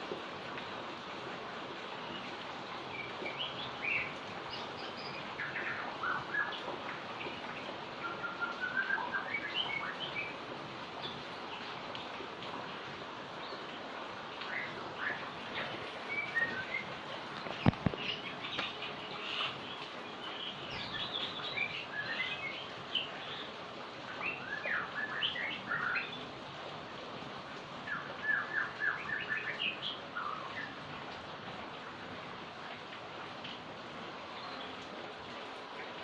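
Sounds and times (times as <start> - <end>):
heavy rain hiss: 0.0 - 36.0
small birds chirping: 13.2 - 26.3, 34.2 - 34.9.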